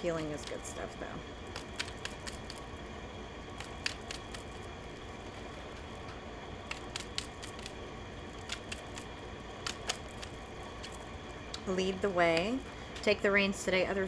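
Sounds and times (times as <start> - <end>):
low steady hum: 0.0 - 14.0
cards clicking and flicking: 1.4 - 2.8, 3.5 - 11.1.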